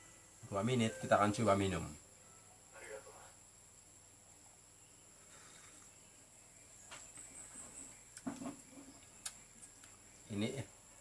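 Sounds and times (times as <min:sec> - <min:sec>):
high-pitched insect drone: 0:00.0 - 0:03.4.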